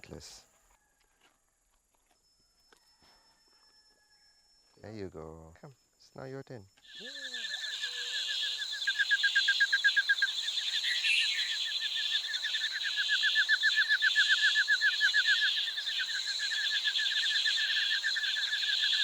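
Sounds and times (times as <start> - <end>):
high fast pulsing animal trill: 6.9 - 19.0.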